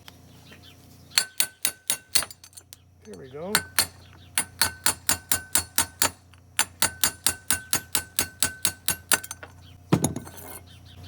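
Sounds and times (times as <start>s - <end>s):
hammer striking steel: 1.2s - 2.5s, 3.1s - 9.4s
metal clatter: 1.2s - 10.7s.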